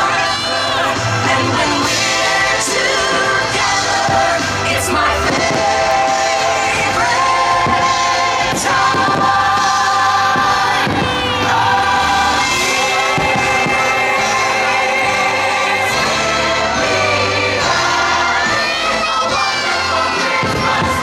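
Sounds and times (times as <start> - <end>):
choir singing long notes: 0.0 - 21.0
firework bangs: 0.0 - 21.0.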